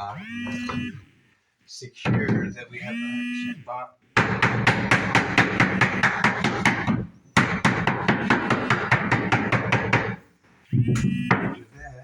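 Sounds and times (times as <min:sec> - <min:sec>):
rapid hammering on beating block: 0:04.2 - 0:10.2, 0:11.0 - 0:11.6.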